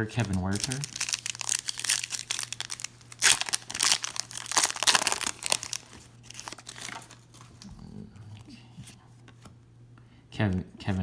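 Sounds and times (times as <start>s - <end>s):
plastic wrapper crinkling: 0.0s - 7.7s.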